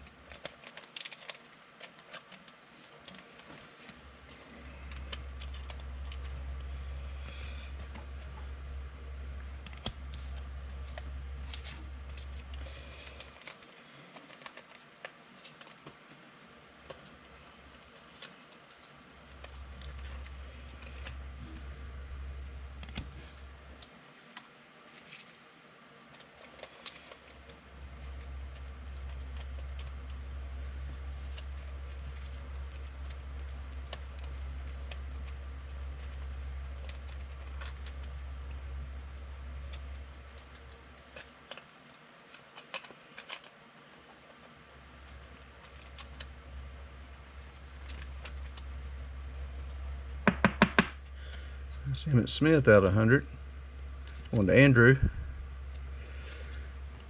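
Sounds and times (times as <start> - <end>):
low electrical hum: 0.0 - 57.0
trading cards clicking and tapping: 50.2 - 51.0.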